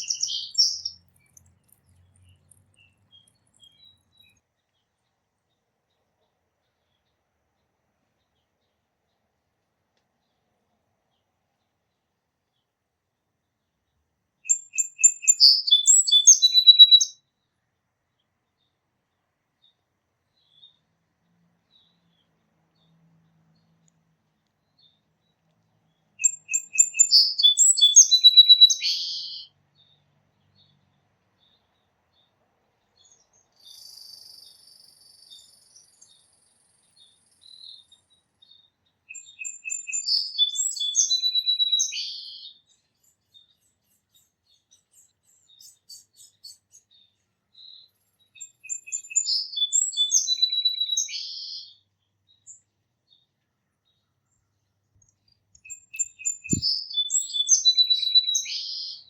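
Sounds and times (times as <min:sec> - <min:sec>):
songbird singing trills: 0:00.0 - 0:06.0, 0:14.4 - 0:17.4, 0:21.7 - 0:59.0
faint bird chirps: 0:00.0 - 0:09.5, 0:13.4 - 0:20.9, 0:21.6 - 0:59.0.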